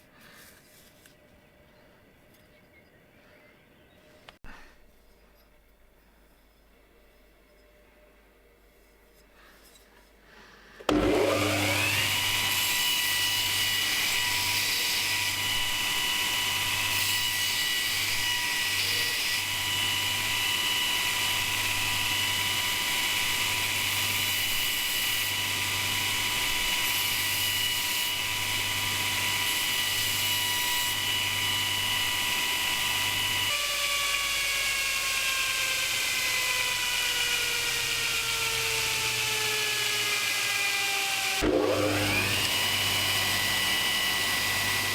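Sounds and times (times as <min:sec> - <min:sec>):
power tool motor whining: 0:10.9 - 0:44.9.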